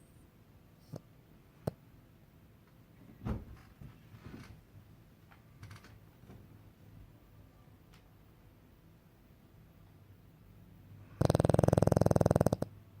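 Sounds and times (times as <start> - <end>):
dog snorting and snuffling: 11.1 - 12.7.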